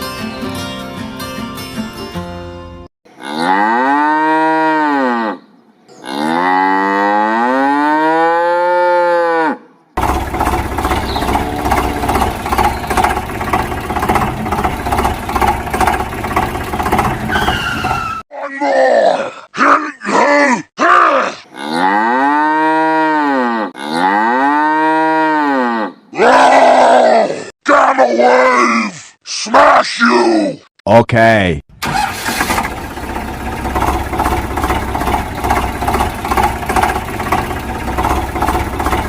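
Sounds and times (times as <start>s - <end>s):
cow mooing: 3.2s - 5.4s, 6.0s - 9.7s, 11.0s - 13.0s, 21.5s - 26.0s
noisy pulsing rumble: 10.0s - 17.4s.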